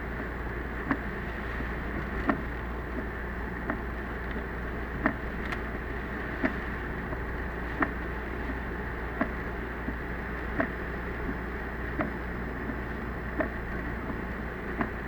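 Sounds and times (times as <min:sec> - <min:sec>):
road and engine noise: 0:00.0 - 0:15.0
windshield wipers knocking: 0:05.0 - 0:05.7, 0:06.4 - 0:14.2.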